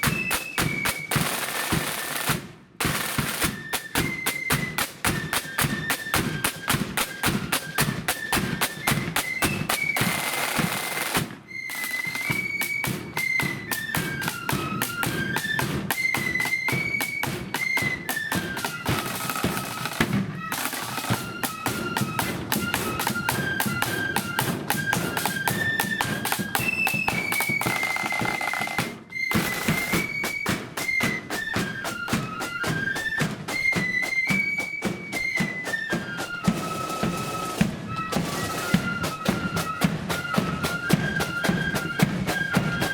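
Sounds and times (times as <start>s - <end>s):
flutes playing melody: 0.0s - 42.9s
snare drumming: 0.0s - 42.9s.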